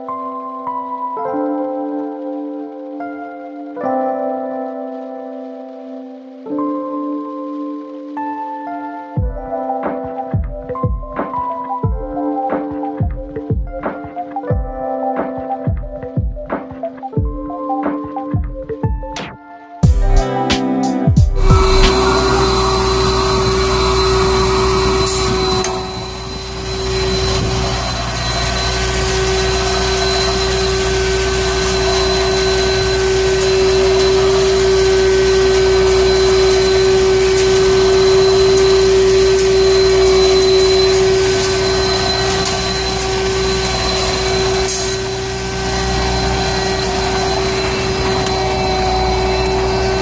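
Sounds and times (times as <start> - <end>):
loud constant whine: 19.8 - 50.0.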